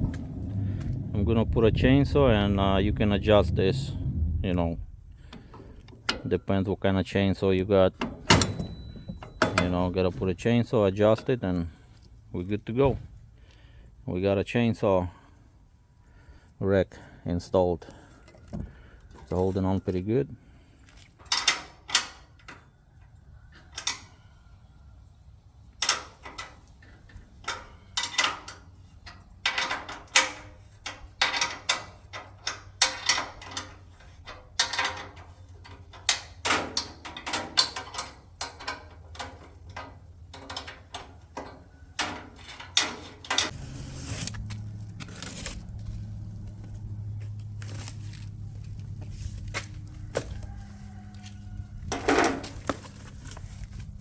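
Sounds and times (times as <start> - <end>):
steady low hum: 0.0 - 10.4
metal clanks and knocks: 5.1 - 6.6, 7.9 - 10.3, 21.2 - 24.2, 25.8 - 43.6, 49.8 - 53.0.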